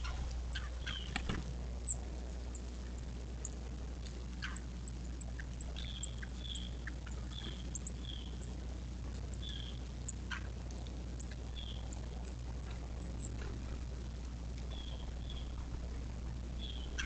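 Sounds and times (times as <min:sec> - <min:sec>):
downward-sweeping bird calls: 0:00.0 - 0:01.2, 0:04.4 - 0:08.5, 0:09.4 - 0:10.5, 0:11.5 - 0:12.0, 0:14.7 - 0:17.0
birds chirping: 0:00.0 - 0:17.0
steady low hum: 0:00.0 - 0:17.0.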